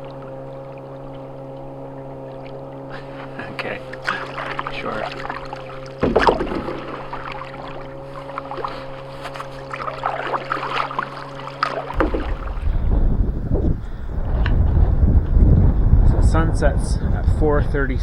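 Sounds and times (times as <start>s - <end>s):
water splashing and dripping: 2.3s - 13.9s
paddle and hull knocks: 4.0s - 15.7s
steady low hum: 11.9s - 18.0s
wind buffeting microphone: 11.9s - 18.0s.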